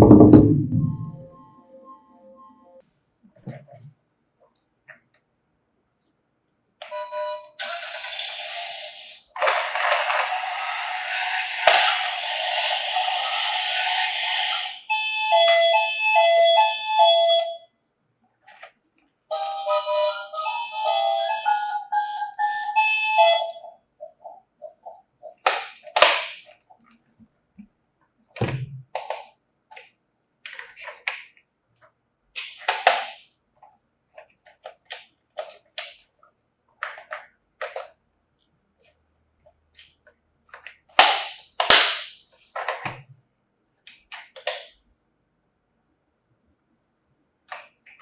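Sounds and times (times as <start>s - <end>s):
toy electronic siren tones: 6.9s - 17.6s, 19.3s - 23.8s
plastic toy vehicles clacking: 9.3s - 10.7s, 11.6s - 12.5s, 24.0s - 27.0s, 28.9s - 36.2s, 36.8s - 38.0s, 39.8s - 43.1s.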